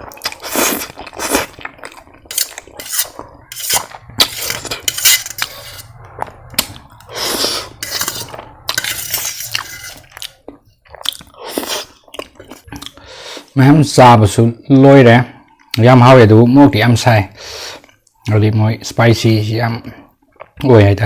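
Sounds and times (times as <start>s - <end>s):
close-up eating noises: 0.0s - 13.6s, 19.6s - 20.8s
cutlery clinking against a bowl: 2.3s - 5.8s, 7.8s - 10.1s.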